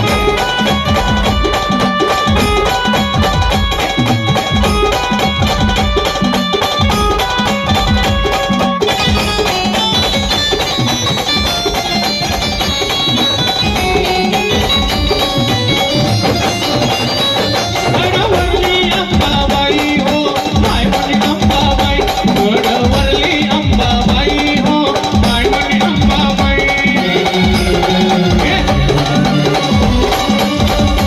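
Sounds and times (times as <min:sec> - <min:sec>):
band playing folk music: 0:00.0 - 0:31.0
heavy drumming: 0:00.0 - 0:31.0.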